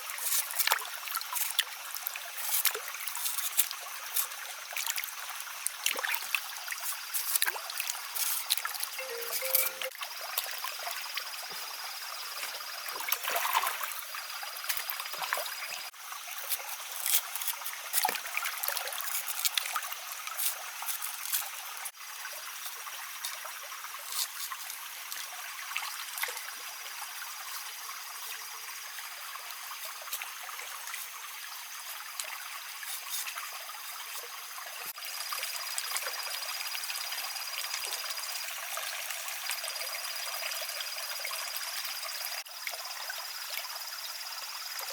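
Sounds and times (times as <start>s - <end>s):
thin high steady tone: 9.0s - 10.0s.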